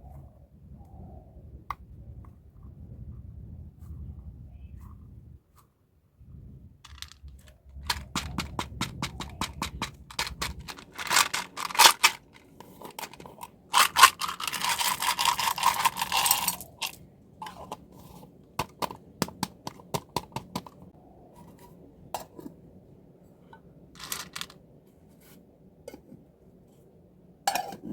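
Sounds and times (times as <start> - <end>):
packaging scraping: 10.1 - 17.7, 24.0 - 24.5.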